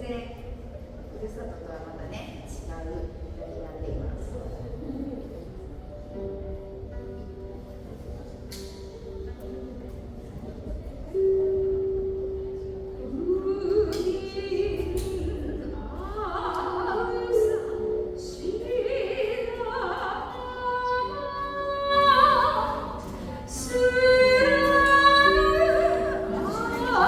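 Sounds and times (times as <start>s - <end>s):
operatic singing: 18.4s - 27.0s.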